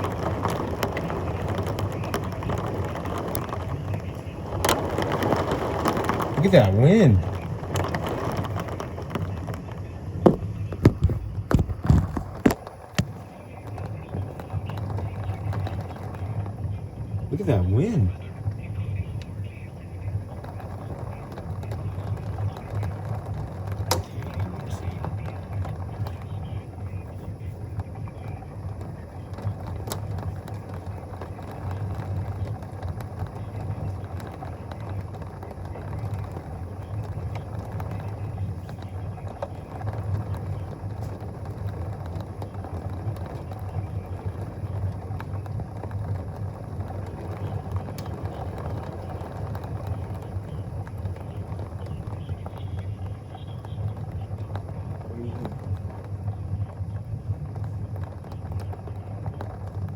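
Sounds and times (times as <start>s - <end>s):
faint clicks: 18.1s - 59.9s.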